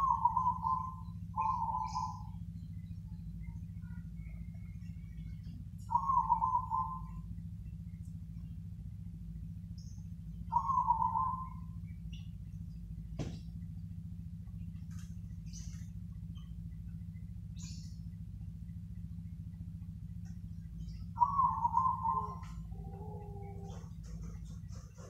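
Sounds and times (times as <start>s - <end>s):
dove cooing: 0.0s - 7.4s, 10.4s - 11.8s, 20.2s - 25.0s
steady low hum: 0.0s - 25.0s.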